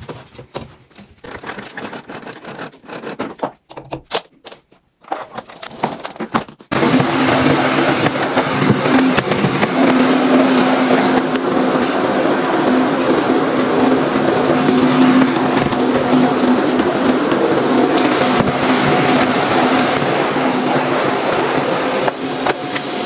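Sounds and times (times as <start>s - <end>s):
household items clattering: 0.0s - 9.7s
vacuum cleaner running: 1.2s - 3.3s, 5.6s - 23.0s.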